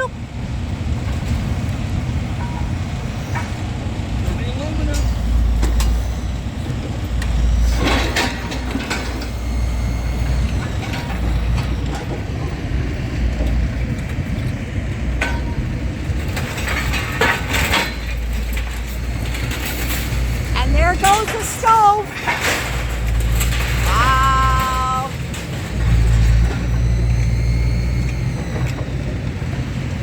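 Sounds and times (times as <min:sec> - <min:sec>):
heavy engine rumbling: 0:00.0 - 0:30.0
scrap metal clanking: 0:16.2 - 0:26.6.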